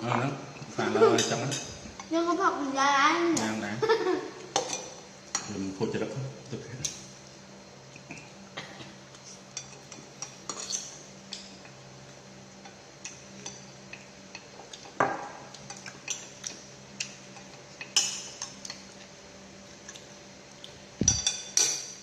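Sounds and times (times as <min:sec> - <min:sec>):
utensils clinking against dishes: 0:01.0 - 0:02.1, 0:04.5 - 0:05.6, 0:09.5 - 0:11.5, 0:17.3 - 0:18.8, 0:21.0 - 0:22.0.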